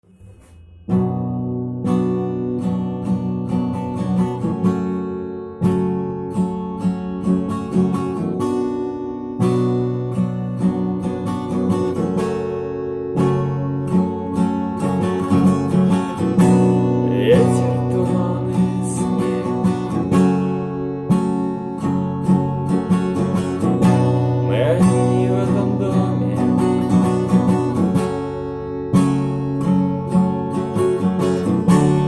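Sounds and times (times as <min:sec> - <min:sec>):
strummed and plucked guitar: 0:00.0 - 0:32.0.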